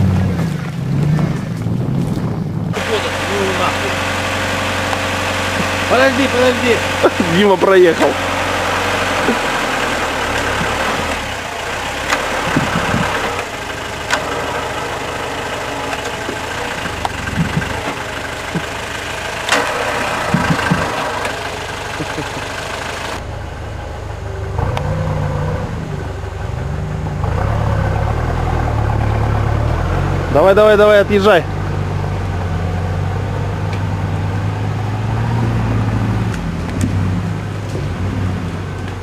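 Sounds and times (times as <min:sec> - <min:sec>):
car engine running and revving: 0:00.0 - 0:39.0
knocks and clatter: 0:09.1 - 0:11.3, 0:12.0 - 0:23.2.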